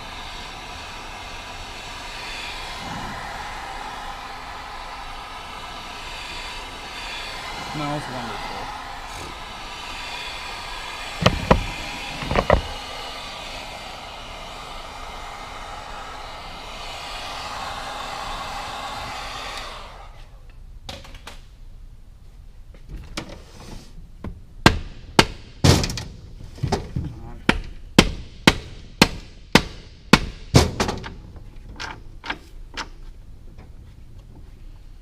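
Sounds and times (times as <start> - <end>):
heat gun blowing: 0.0 - 20.5
sharp knocks: 11.2 - 12.8.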